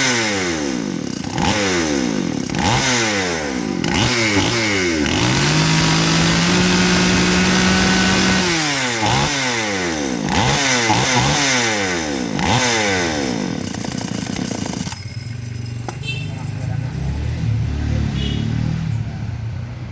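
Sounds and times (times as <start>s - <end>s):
chainsaw engine revving: 0.0s - 15.2s.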